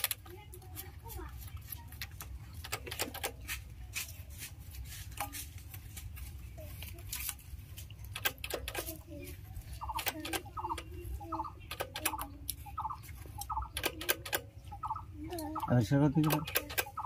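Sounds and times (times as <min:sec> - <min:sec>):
sharp clicks and taps: 0:08.0 - 0:09.0, 0:09.8 - 0:15.6, 0:16.2 - 0:17.0.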